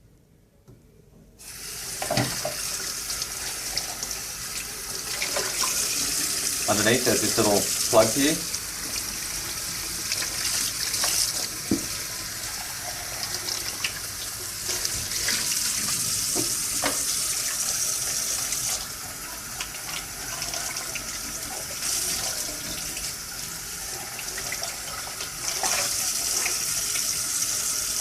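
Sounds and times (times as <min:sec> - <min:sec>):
tap water splashing in sink: 0:02.0 - 0:02.8, 0:05.1 - 0:06.0, 0:10.1 - 0:12.0, 0:14.7 - 0:17.6, 0:24.3 - 0:27.2.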